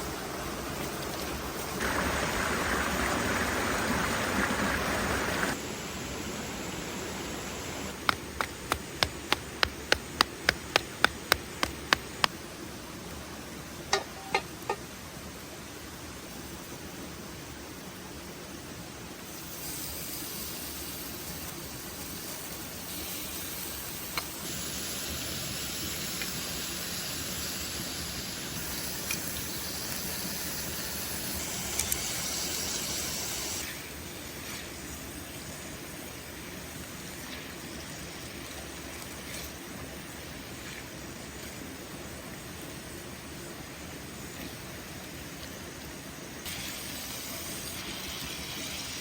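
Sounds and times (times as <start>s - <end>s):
food sizzling in a pan: 19.2s - 38.2s, 46.4s - 49.0s.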